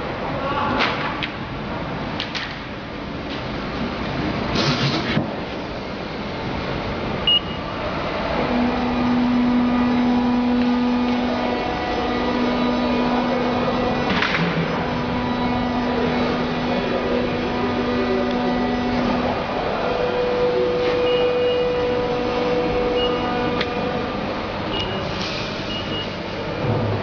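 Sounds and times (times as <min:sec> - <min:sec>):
machine mechanical noise: 0:00.8 - 0:27.0
steady hum: 0:05.2 - 0:27.0
short high beep: 0:07.3 - 0:07.6, 0:21.0 - 0:21.9.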